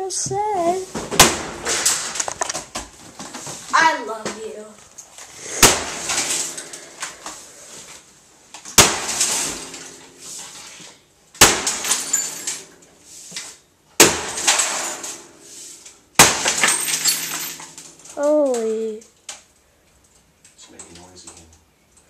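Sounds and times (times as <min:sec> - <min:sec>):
sledgehammer blows: 0:05.3 - 0:07.8
glass shattering and clattering: 0:08.8 - 0:10.8, 0:11.4 - 0:12.8, 0:14.0 - 0:15.4, 0:16.2 - 0:18.2.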